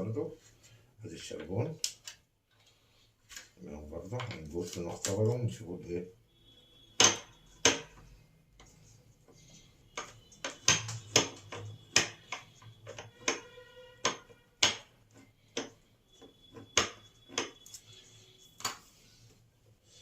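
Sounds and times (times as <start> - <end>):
metal tools clicking and knocking: 10.0 - 17.8.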